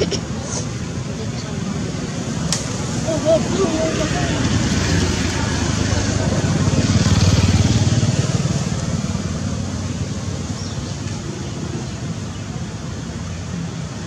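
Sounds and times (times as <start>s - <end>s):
vehicle engine passing: 2.1s - 10.7s.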